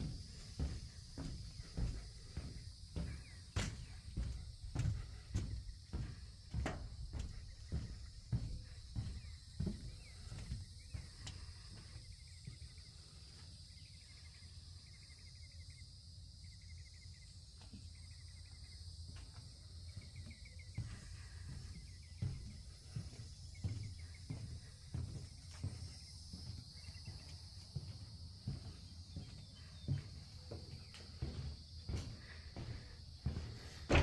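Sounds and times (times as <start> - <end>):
insect trills: 0.0 - 34.0
insects buzzing: 0.0 - 34.0.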